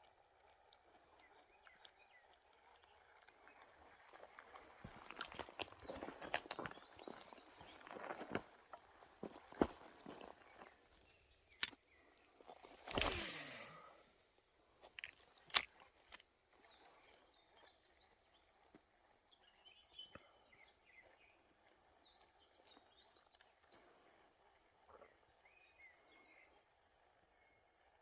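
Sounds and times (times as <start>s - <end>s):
faint birds chirping: 0.0s - 28.0s
fishing gear clicks: 9.4s - 14.0s, 14.9s - 17.8s
whirring swish falling in pitch: 13.0s - 14.0s.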